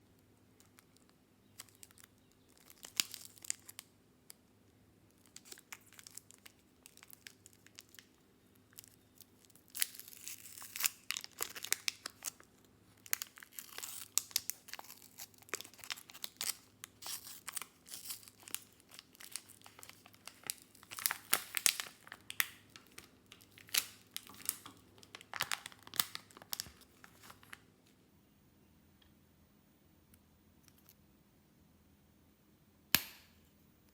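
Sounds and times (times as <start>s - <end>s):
wrapper crackling and rustling: 1.6s - 3.9s, 5.2s - 27.6s.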